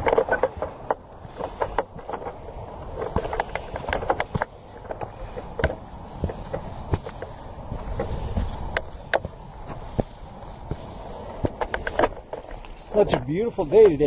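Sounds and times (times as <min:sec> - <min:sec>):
footsteps on a trail: 0:00.0 - 0:14.0
gear clicking and rustling: 0:00.0 - 0:14.0.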